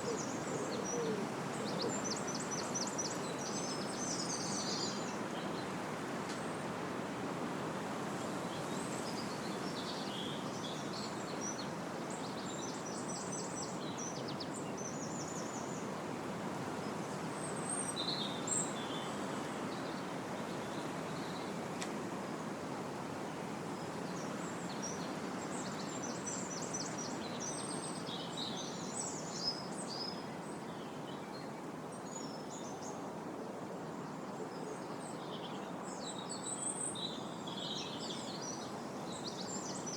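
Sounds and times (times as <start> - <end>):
wind rushing through trees: 0.0 - 13.9.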